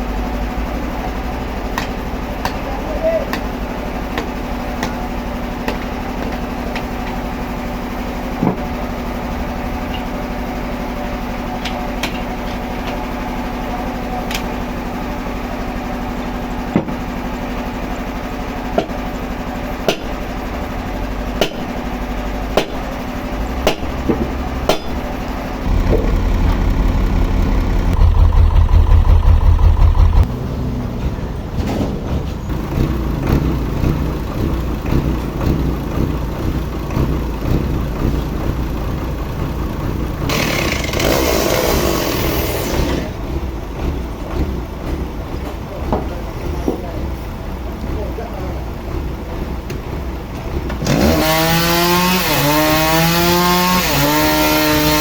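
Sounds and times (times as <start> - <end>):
heavy machinery engine running: 0.0 - 55.0
sharp knocks and clanks: 1.6 - 2.7, 3.3 - 7.3, 8.3 - 8.9, 11.5 - 13.2, 16.6 - 17.8, 18.7 - 19.2, 19.8 - 20.7, 21.3 - 30.3, 43.8 - 47.2.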